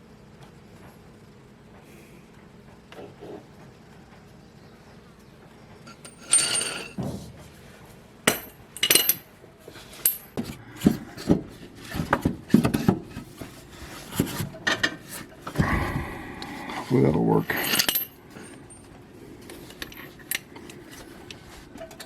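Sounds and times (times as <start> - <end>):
metal tools clanking on mower blade: 5.9 - 7.0, 17.0 - 18.8
sharp metal knocks and clinks: 5.9 - 7.0, 8.3 - 9.2, 17.4 - 19.0.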